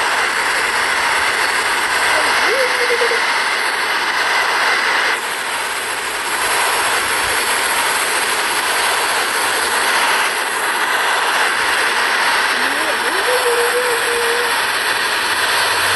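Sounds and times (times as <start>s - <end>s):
airflow inside aircraft cabin: 0.0s - 15.9s
jet engine noise: 0.0s - 15.9s.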